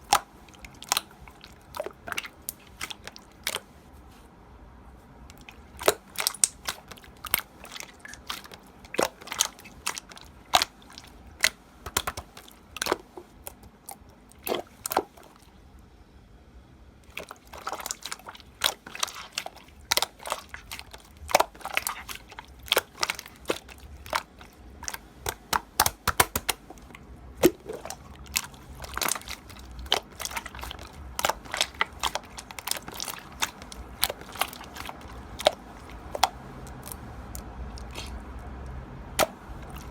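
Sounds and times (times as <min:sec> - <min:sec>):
slime squeezed with crackling pops: 0:05.8 - 0:13.5, 0:17.4 - 0:37.0.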